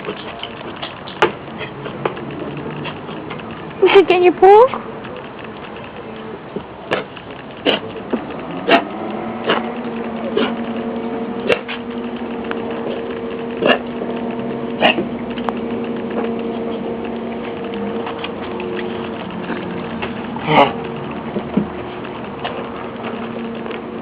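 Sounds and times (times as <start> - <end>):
steady hum: 0.0 - 24.0
puppy coughing: 6.9 - 7.9, 10.4 - 10.6, 13.6 - 14.0, 14.8 - 15.1, 20.4 - 20.8.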